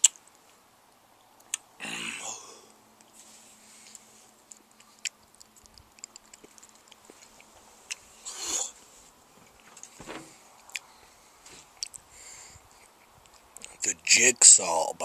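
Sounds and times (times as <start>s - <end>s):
lip smacks and mouth clicks: 0.0s - 0.4s, 1.4s - 1.7s, 3.8s - 8.3s, 11.7s - 12.1s, 12.7s - 13.8s
heavy breath: 1.8s - 2.8s, 10.2s - 13.0s
sharp hissing breath: 8.2s - 8.9s, 10.3s - 12.8s.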